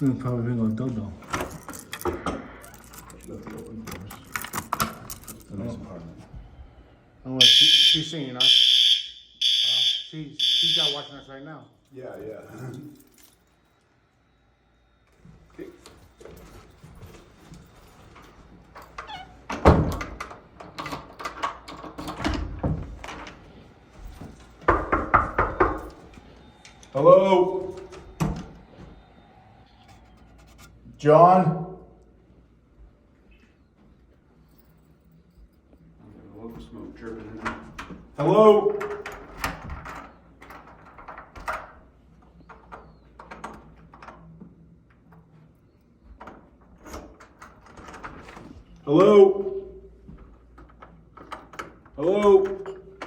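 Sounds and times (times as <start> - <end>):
handling knocks and clicks: 1.2 - 5.6.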